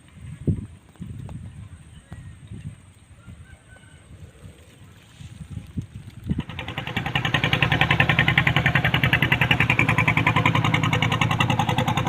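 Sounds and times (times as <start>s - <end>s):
small engine running: 6.2s - 12.0s.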